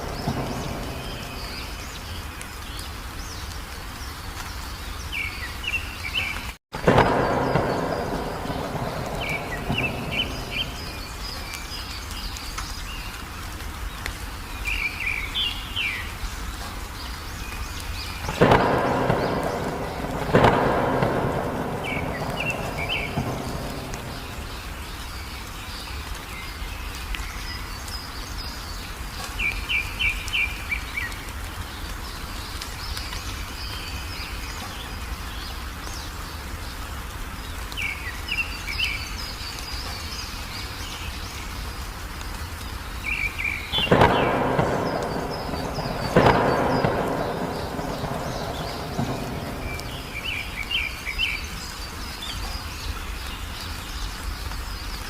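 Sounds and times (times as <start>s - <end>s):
thunderclaps rumbling: 0.0s - 2.3s, 6.8s - 12.1s, 18.2s - 25.3s, 43.2s - 51.6s
rain hissing: 0.0s - 55.0s
songbirds chirping: 0.0s - 55.0s.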